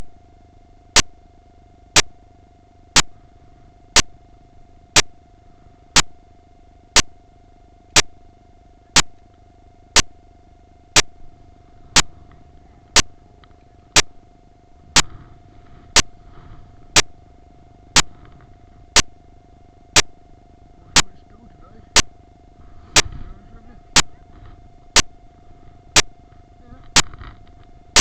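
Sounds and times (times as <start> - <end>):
faint steady hum: 0.0 - 28.0
sharp clicks: 4.0 - 4.2, 6.0 - 6.2, 7.0 - 7.2, 7.9 - 8.2, 9.0 - 9.4, 10.0 - 10.2, 11.0 - 11.2, 13.0 - 14.2, 20.0 - 20.2, 21.0 - 21.2, 24.0 - 24.2, 26.9 - 27.2.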